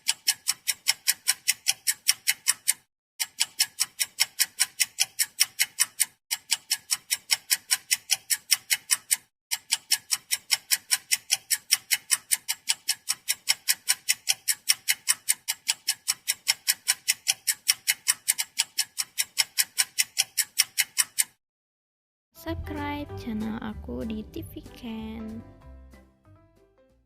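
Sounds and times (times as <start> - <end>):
wall clock ticking: 0.0 - 21.4.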